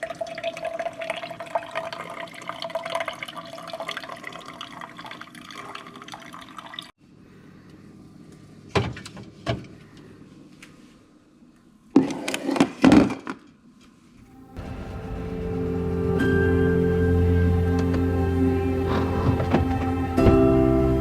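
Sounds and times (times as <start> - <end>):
running trickling water: 0.0 - 6.9.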